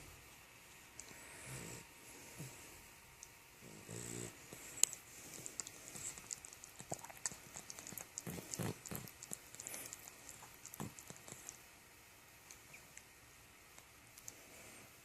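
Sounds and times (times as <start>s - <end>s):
puppy snuffling breaths: 1.0s - 2.9s, 3.6s - 11.6s
puppy snoring: 1.2s - 2.8s, 3.6s - 11.6s.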